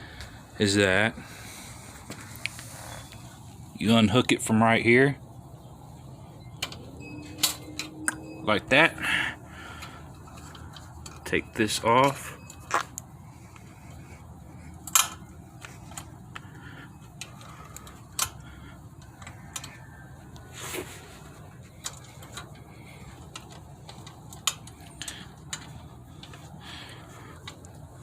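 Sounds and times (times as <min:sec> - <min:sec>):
low steady hum: 0:00.0 - 0:28.0
metal clicks and clinks: 0:21.8 - 0:26.4.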